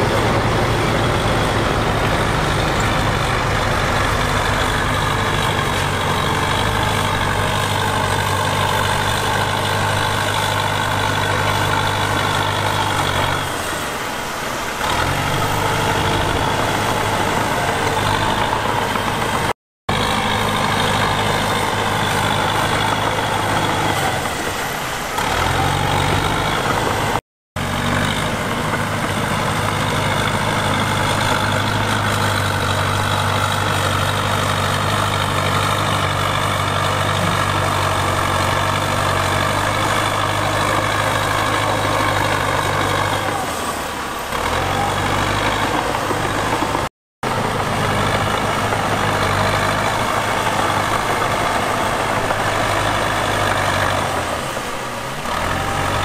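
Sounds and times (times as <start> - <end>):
diesel machinery engine running: 0.0 - 56.0.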